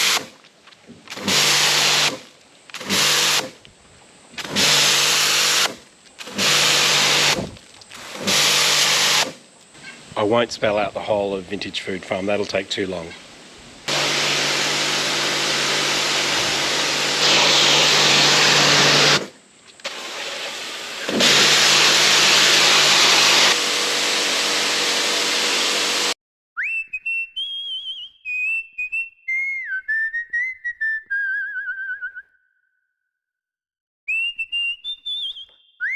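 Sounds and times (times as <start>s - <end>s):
pressure washer jet hissing on concrete: 1.1s - 2.2s, 4.5s - 5.7s, 6.3s - 9.4s, 13.9s - 26.2s
pressure washer motor hum: 4.4s - 9.3s, 13.9s - 26.2s
person whistling a tune: 26.6s - 32.7s, 34.1s - 35.9s.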